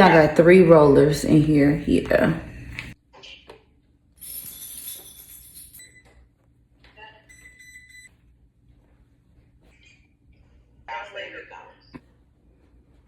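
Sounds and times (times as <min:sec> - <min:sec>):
appliance electronic beeps: 0:07.0 - 0:08.1.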